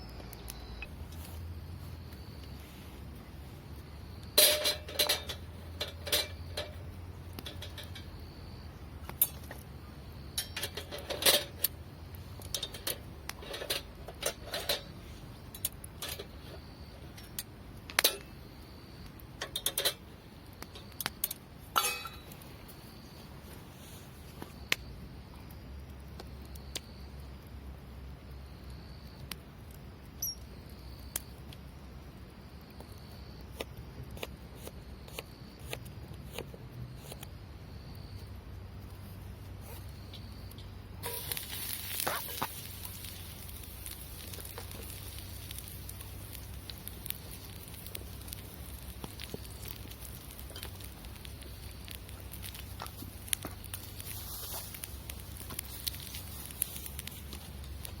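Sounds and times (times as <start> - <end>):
small hard objects clicking: 19.0 - 22.5, 40.2 - 58.0.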